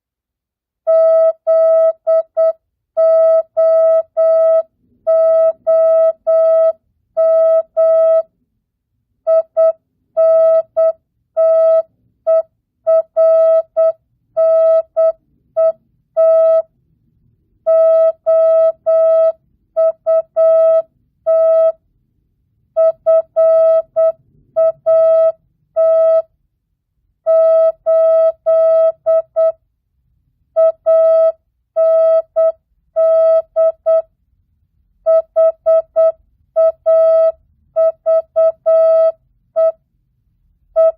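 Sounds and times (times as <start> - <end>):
morse code beeps: 0.9 - 8.3, 9.3 - 16.6, 17.7 - 21.8, 22.8 - 26.3, 27.3 - 29.5, 30.6 - 34.1, 35.1 - 39.8.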